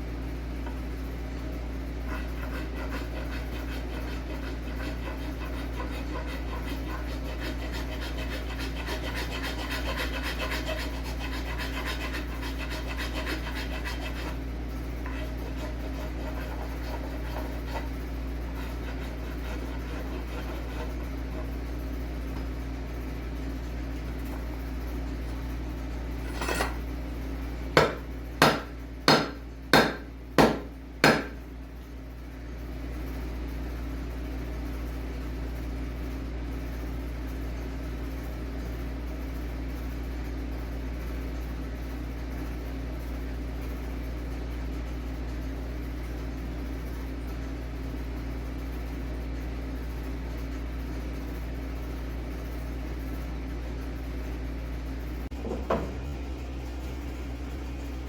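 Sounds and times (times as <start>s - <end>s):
rasping strokes on wood: 2.1s - 14.4s, 15.0s - 21.5s, 27.8s - 31.4s.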